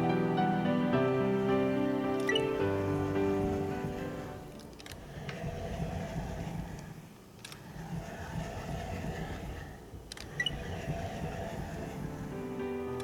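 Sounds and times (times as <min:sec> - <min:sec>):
sliding door rumbling on track: 0:01.3 - 0:07.0.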